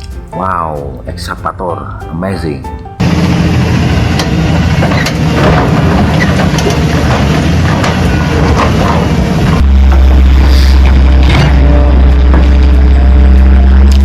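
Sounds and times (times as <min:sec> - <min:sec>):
excavator engine running: 0:02.8 - 0:14.0.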